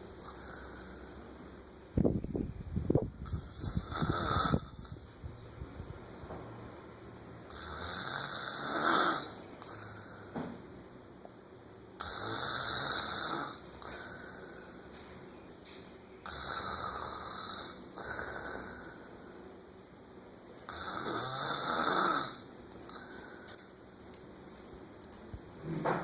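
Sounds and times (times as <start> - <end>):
man snoring: 0.2 - 1.2, 3.2 - 5.0, 7.5 - 10.3, 12.0 - 14.6, 16.2 - 19.1, 20.7 - 23.5.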